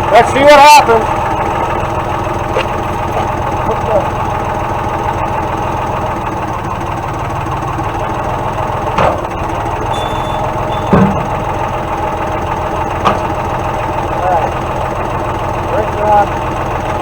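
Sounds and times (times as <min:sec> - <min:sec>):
tractor engine idling: 0:00.0 - 0:17.0
sharp knocks: 0:10.7 - 0:11.5.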